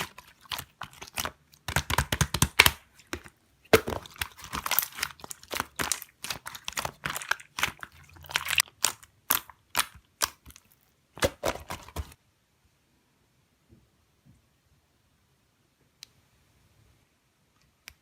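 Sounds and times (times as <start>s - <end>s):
slime crackling and crunching: 0.0s - 12.1s.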